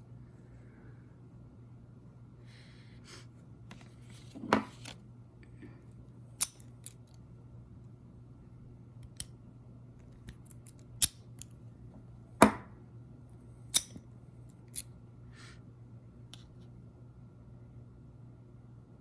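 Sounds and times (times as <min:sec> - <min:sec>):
lock picks clicking in padlock: 0:06.4 - 0:07.2, 0:10.0 - 0:11.6, 0:13.8 - 0:14.9.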